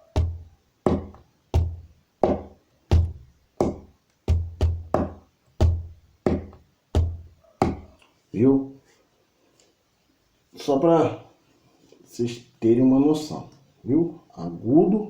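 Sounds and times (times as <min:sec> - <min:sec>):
deep fist thumps on wooden table: 0:00.2 - 0:08.0
open hand slaps on table edge: 0:06.3 - 0:08.0.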